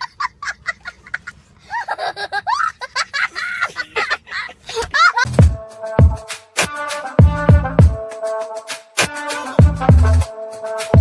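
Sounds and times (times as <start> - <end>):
high-pitched giggling: 0.0 - 5.3.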